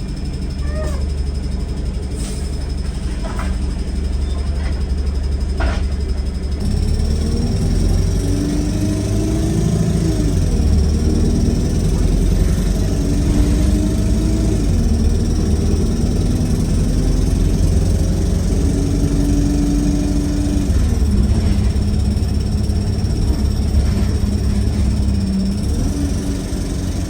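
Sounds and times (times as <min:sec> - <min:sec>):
bus engine rumble: 0:00.0 - 0:27.0
whining tones: 0:06.6 - 0:27.0.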